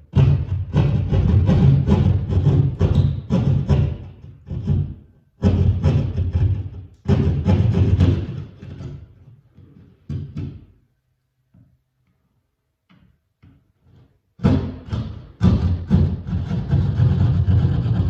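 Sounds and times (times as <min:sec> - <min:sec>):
hand saw cutting drywall: 0:14.5 - 0:18.0.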